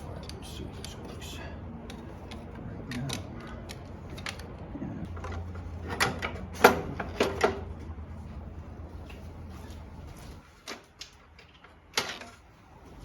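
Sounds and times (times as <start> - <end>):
tools clicking and rattling: 0.0 - 7.8.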